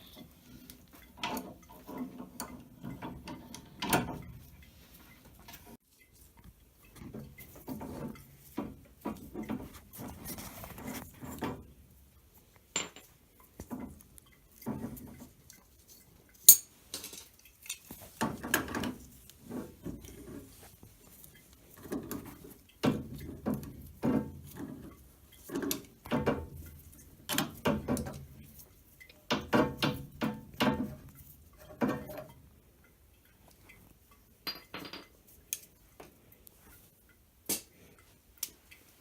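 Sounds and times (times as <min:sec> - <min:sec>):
sharp metallic click: 0:16.5 - 0:16.7
wrenches clinking on metal pipe: 0:16.5 - 0:16.7.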